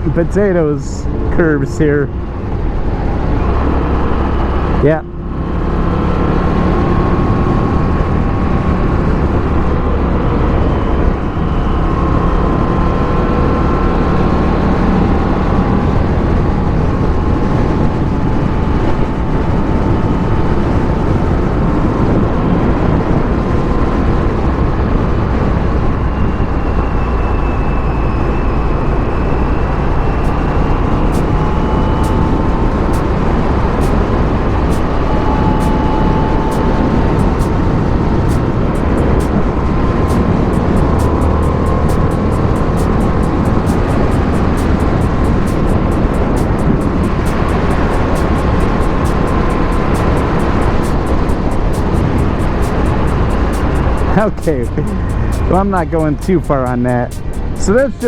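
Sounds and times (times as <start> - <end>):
motorcycle engine running: 28.7 - 58.0.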